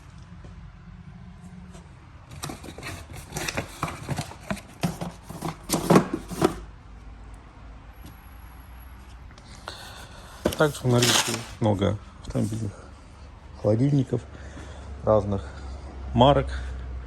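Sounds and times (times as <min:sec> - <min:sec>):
handling knocks and scrapes: 0:01.5 - 0:06.7.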